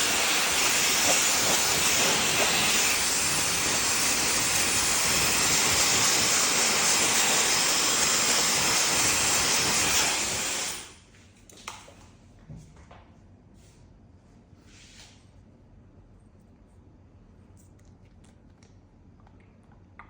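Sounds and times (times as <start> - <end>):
hair dryer blowing: 0.0 - 11.0.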